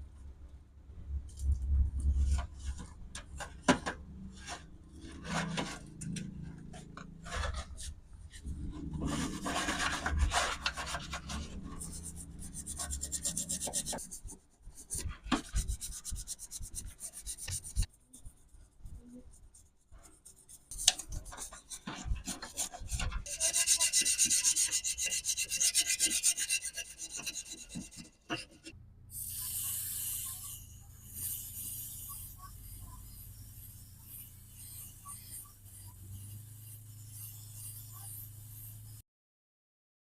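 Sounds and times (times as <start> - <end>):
hand rubbing and scraping: 4.2 - 29.6.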